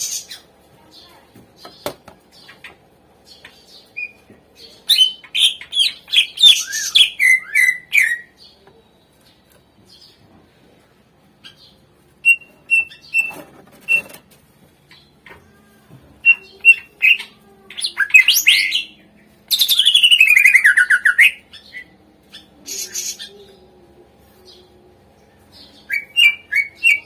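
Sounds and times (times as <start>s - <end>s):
bird chirping and trilling: 0.0s - 10.2s, 11.4s - 14.2s, 16.2s - 23.7s, 24.4s - 27.0s.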